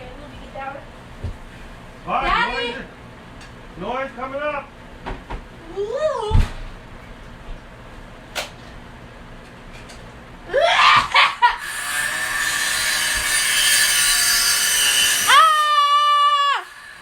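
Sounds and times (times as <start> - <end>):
person laughing or squealing: 10.5 - 11.8
small electric motor whirring: 11.5 - 17.0.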